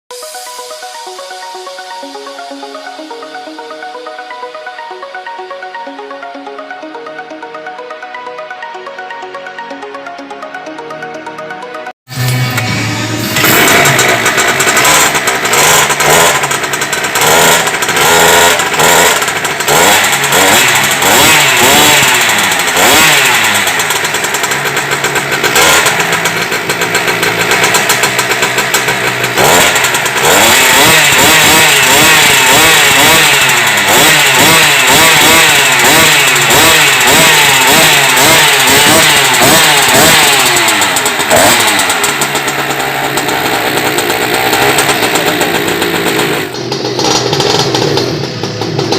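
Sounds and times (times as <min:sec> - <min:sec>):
two-stroke scooter engine revving: 0:12.1 - 0:48.9.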